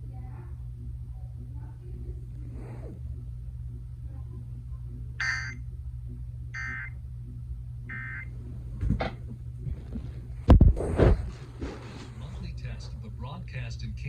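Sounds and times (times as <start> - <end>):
low steady hum: 0.0 - 14.0
digital data tone bursts: 5.2 - 5.6, 6.6 - 7.0.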